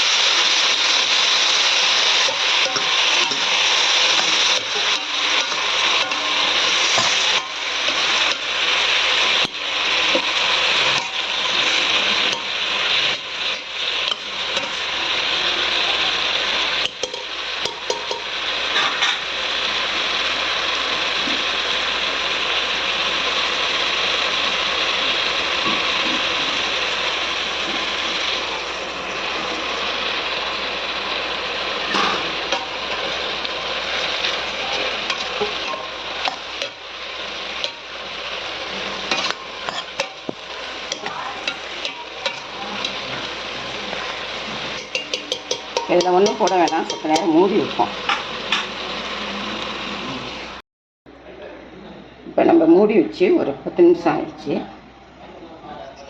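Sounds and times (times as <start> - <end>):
chicken sizzling in hot oil: 0.0 - 50.6
spatula scraping a pan: 0.4 - 15.3, 16.9 - 19.3, 27.8 - 49.8.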